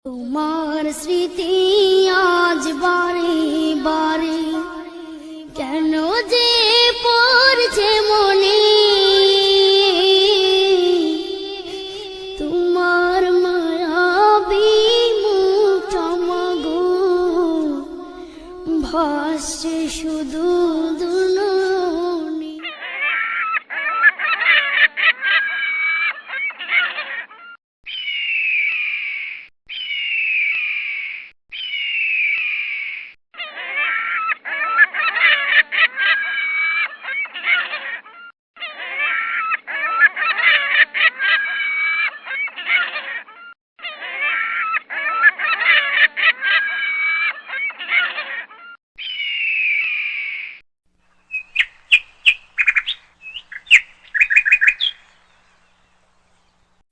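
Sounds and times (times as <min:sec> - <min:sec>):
bird cackling calls: 0:22.6 - 0:50.5, 0:51.3 - 0:55.8.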